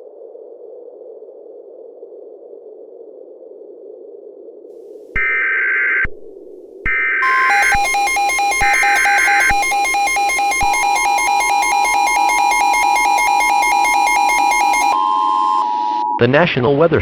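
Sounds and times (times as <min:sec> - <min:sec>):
pulsing two-pitch alert tone: 0:07.2 - 0:16.2
screeching digital data tones: 0:07.2 - 0:16.3
steady tone: 0:07.2 - 0:16.4.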